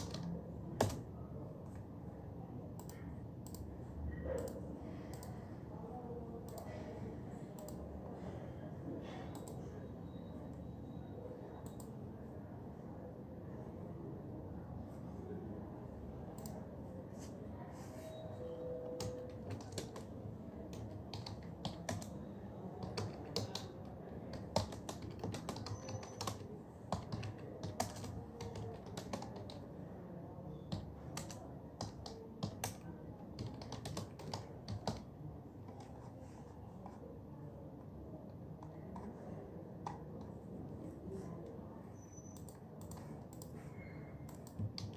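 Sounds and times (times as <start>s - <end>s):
keyboard typing: 0.0s - 1.1s, 4.3s - 5.4s, 18.6s - 29.7s, 30.6s - 36.1s, 42.2s - 44.9s.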